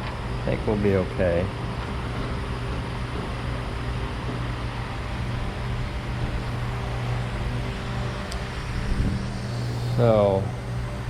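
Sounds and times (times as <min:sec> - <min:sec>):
fan motor humming: 0:00.0 - 0:11.0.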